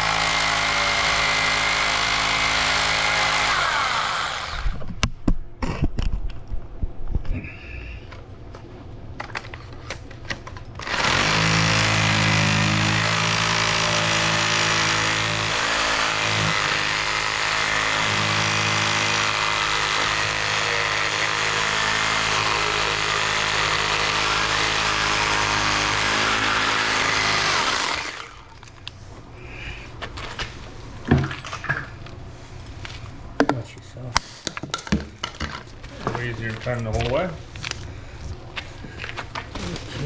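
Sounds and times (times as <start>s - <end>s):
electric power tool running: 0.0s - 4.8s, 10.8s - 28.9s.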